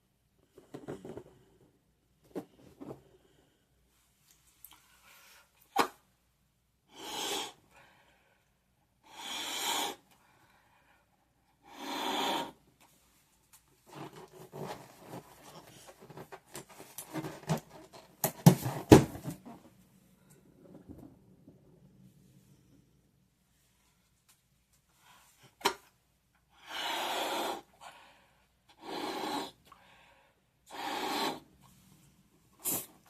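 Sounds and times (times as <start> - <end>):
breaths blowing up balloon: 6.9 - 7.6, 9.0 - 10.2, 11.6 - 12.6, 26.6 - 28.1, 28.7 - 29.9, 30.7 - 31.6, 32.6 - 33.0.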